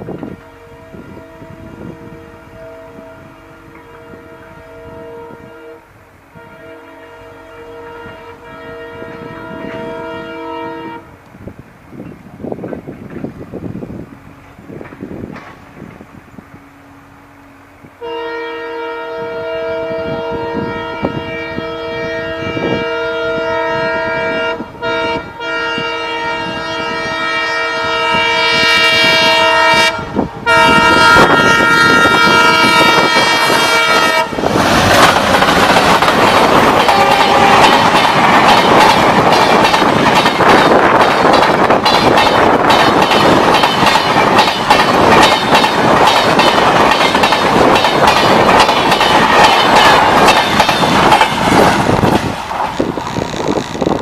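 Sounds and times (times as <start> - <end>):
train rushing past rumble: 0.0 - 54.0
locomotive horns: 0.1 - 11.2, 16.5 - 41.0
wheels clacking over rail joints: 14.4 - 16.1, 34.2 - 54.0.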